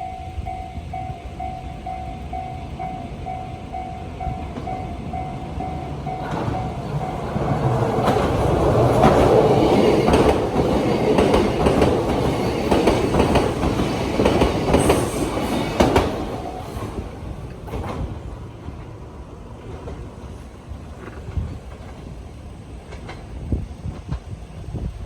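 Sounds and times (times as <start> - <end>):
level crossing bell ringing: 0.0 - 7.5
train wheels clicking over rails: 0.0 - 24.9.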